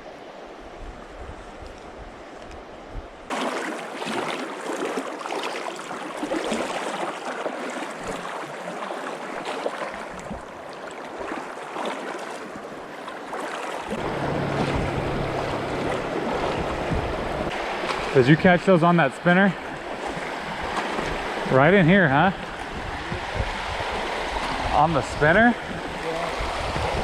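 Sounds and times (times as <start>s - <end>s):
river water rushing over rocks: 3.3s - 24.7s
low rumble: 14.0s - 17.9s.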